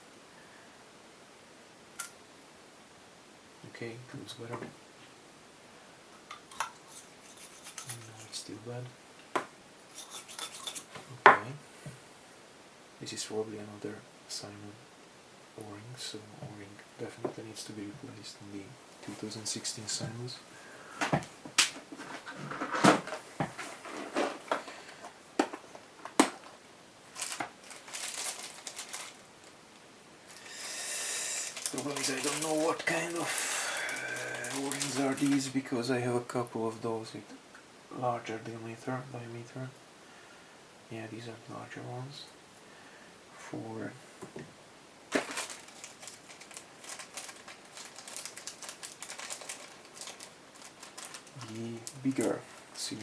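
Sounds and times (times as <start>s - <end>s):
rustling: 21.0s - 35.8s, 45.1s - 53.0s
small hard parts rattling: 45.1s - 52.2s.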